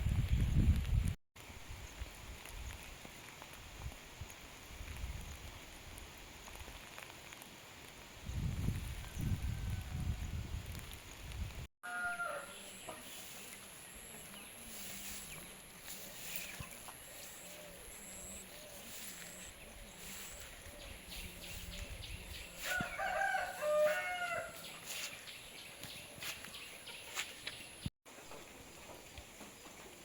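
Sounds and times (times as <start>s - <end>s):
rooster crowing: 11.8s - 12.6s, 22.6s - 24.8s.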